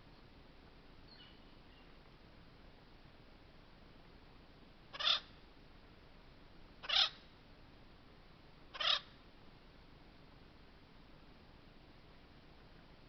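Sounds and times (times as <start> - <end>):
woodpecker calling: 4.9 - 5.4, 6.8 - 7.2, 8.7 - 9.2.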